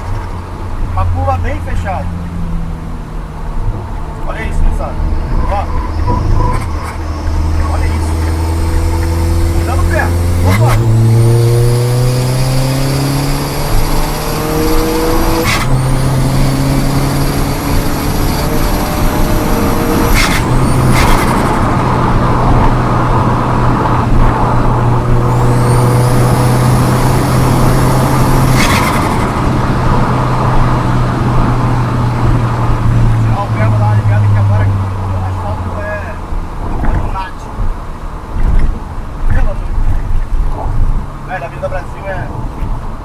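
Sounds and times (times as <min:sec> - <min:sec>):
car engine accelerating: 0:00.0 - 0:43.0
turbo whistle: 0:05.3 - 0:09.6.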